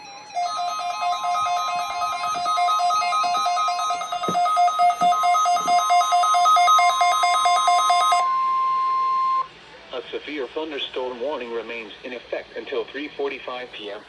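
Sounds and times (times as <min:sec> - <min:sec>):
steady alarm tone: 0:00.0 - 0:09.5.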